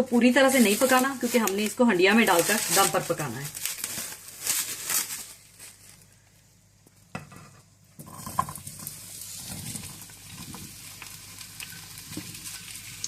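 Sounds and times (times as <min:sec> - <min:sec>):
potatoes sizzling in a pan: 0:00.0 - 0:04.0, 0:08.0 - 0:13.0.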